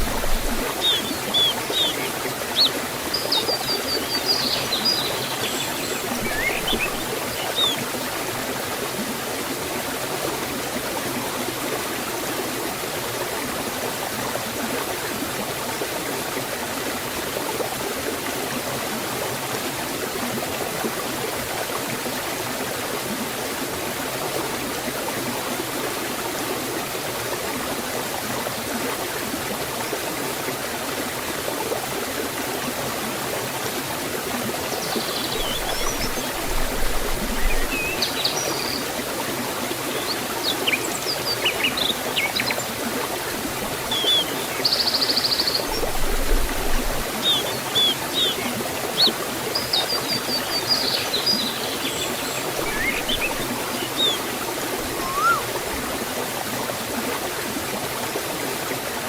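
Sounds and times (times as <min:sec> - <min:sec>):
bird chirping: 0:00.0 - 0:07.8, 0:34.8 - 0:38.9, 0:39.9 - 0:42.7, 0:43.9 - 0:45.9, 0:47.2 - 0:54.3, 0:54.9 - 0:55.5
waterfall and stream rushing: 0:00.0 - 0:59.0.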